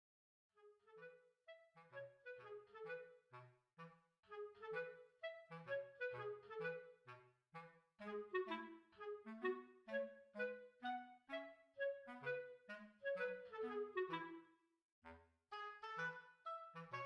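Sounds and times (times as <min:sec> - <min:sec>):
bouncy woodwind tune: 0:00.6 - 0:17.0.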